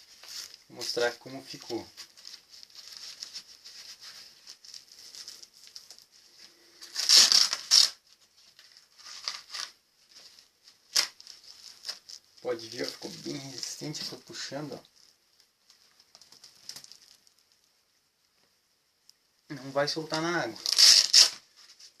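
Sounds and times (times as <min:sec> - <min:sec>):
velcro ripping open: 0:00.0 - 0:06.1, 0:06.8 - 0:14.8, 0:20.1 - 0:22.0
velcro strap rustling: 0:00.0 - 0:17.5, 0:20.1 - 0:22.0.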